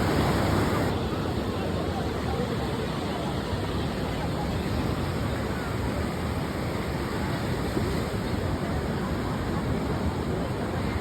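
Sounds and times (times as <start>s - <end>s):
ocean surf washing onto beach: 0.0s - 1.1s.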